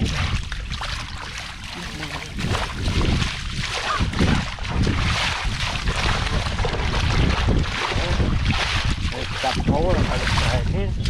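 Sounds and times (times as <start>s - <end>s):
water sloshing and splashing: 0.0s - 11.0s
wind buffeting microphone: 0.0s - 11.0s.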